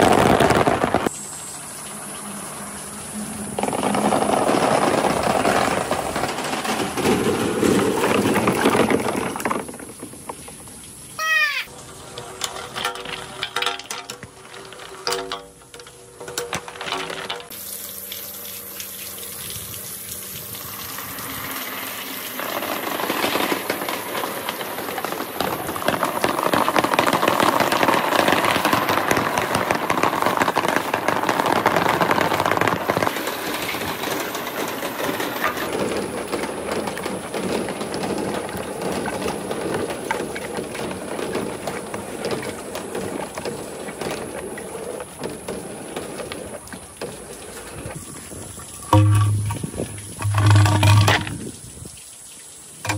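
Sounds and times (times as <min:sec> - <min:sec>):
marbles clattering down a run: 0:03.5 - 0:10.6, 0:21.2 - 0:46.6, 0:48.8 - 0:51.5.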